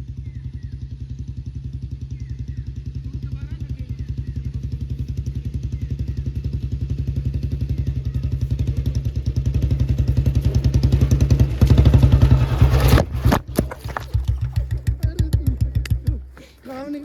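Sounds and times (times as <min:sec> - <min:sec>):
motorcycle engine running: 0:00.0 - 0:17.0
brief clatter: 0:12.1 - 0:14.8.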